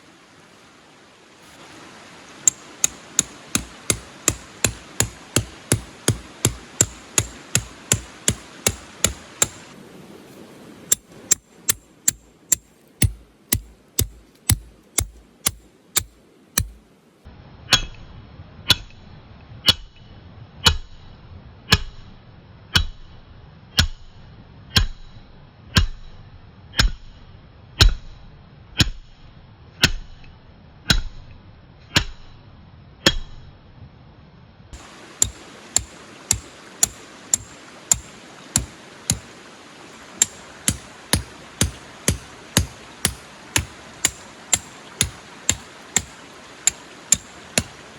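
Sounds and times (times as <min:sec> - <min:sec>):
steady hiss: 0:00.0 - 0:17.3, 0:34.8 - 0:47.9.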